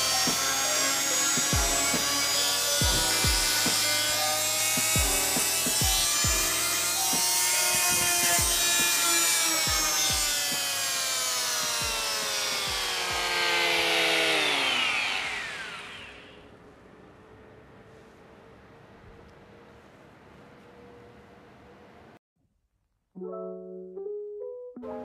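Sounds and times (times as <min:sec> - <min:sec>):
motor winding down: 0:00.0 - 0:16.4
oscillating multi-tool whining: 0:00.0 - 0:16.5.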